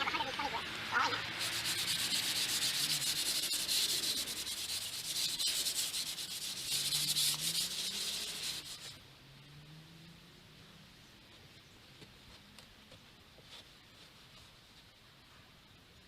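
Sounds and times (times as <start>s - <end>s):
sandpaper scraping wood: 1.0s - 9.0s.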